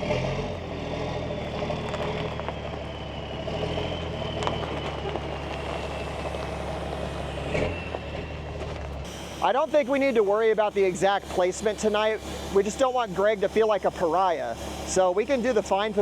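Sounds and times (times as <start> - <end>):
engine idling: 0.0 - 16.0
faint high whine: 2.4 - 16.0.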